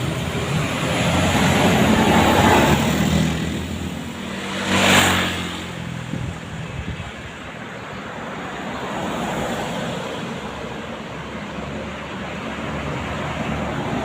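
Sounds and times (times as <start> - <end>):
large vehicle engine passing: 0.0 - 6.3
road traffic noise: 0.0 - 14.0.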